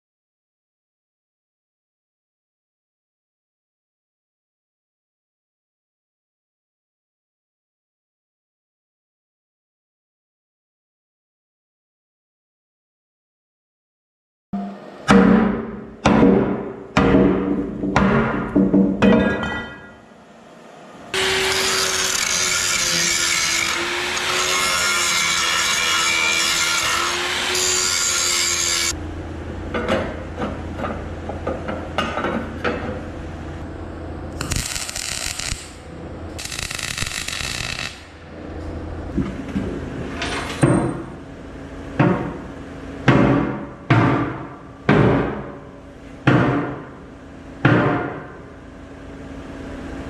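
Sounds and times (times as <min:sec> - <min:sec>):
power tool cutting steel: 0:21.1 - 0:29.0, 0:34.4 - 0:35.8, 0:36.4 - 0:38.2.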